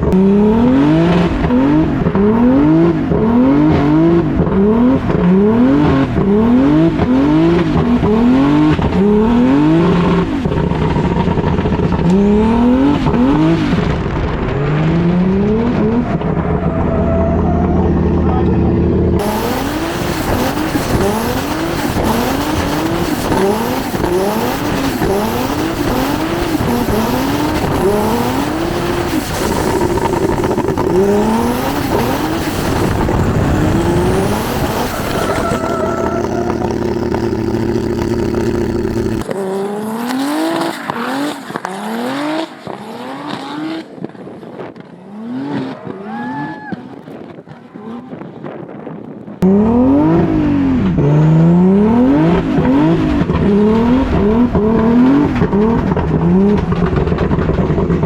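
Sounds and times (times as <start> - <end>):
car engine revving: 0.0 - 46.2, 49.4 - 58.0
tyre squeal: 15.9 - 18.3, 27.8 - 42.4.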